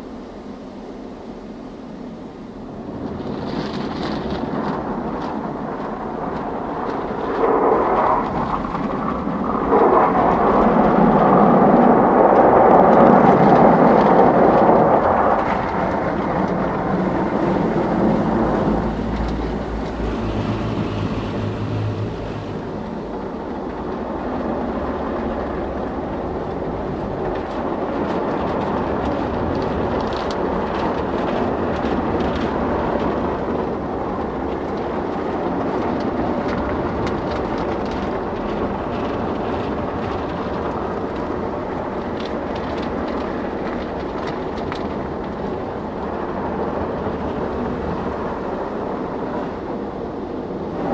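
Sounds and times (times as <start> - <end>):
car wash machinery: 2.3 - 50.9
low hum: 13.6 - 29.6.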